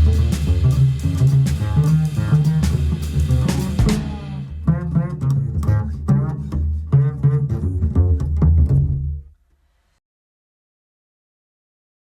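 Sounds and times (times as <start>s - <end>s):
deep bass line: 0.0s - 9.3s.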